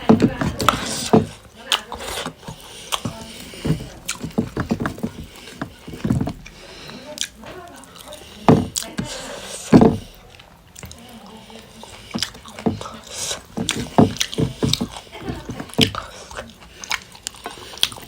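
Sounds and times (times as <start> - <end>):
chewing and mouth smacks: 0.0 - 18.0.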